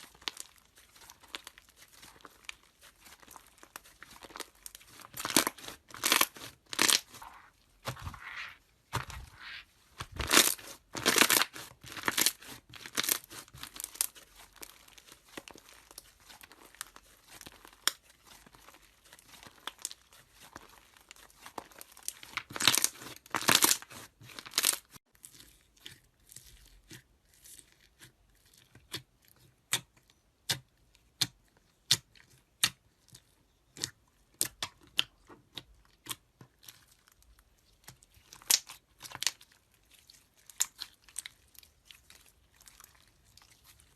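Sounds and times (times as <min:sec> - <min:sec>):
slime crackling and popping: 0:00.0 - 0:25.0, 0:33.7 - 0:43.9.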